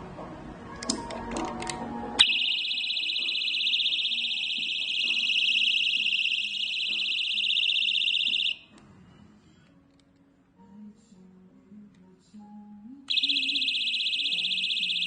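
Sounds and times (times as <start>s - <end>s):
alarm click: 2.2s - 8.6s, 13.1s - 15.0s
high-pitched alarm siren: 2.2s - 8.7s, 13.1s - 15.0s.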